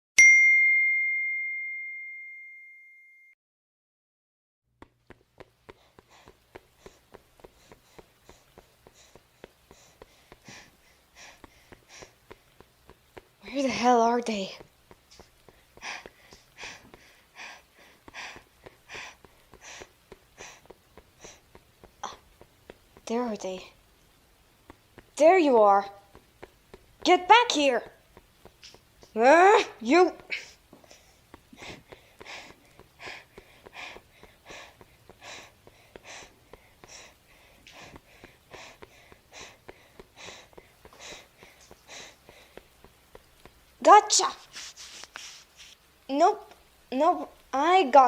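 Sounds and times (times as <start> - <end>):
woman panting: 5.4 - 23.6, 29.5 - 43.6.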